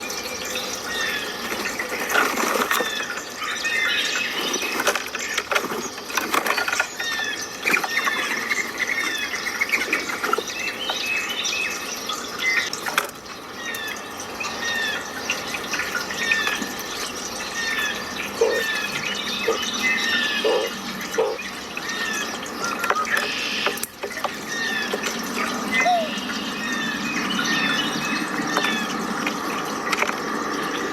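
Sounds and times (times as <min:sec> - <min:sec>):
small birds chirping: 0:00.0 - 0:29.8
water rushing: 0:06.8 - 0:30.9.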